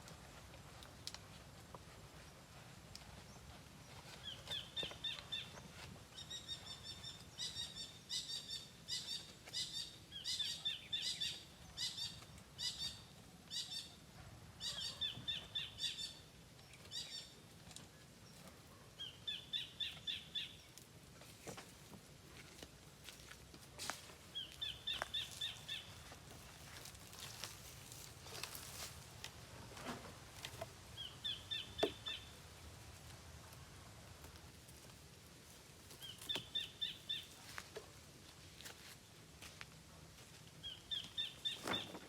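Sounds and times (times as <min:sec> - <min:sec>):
bird chirping: 0:03.2 - 0:14.0, 0:14.6 - 0:17.4, 0:24.4 - 0:26.1, 0:31.0 - 0:32.4, 0:36.0 - 0:37.4, 0:40.6 - 0:42.0.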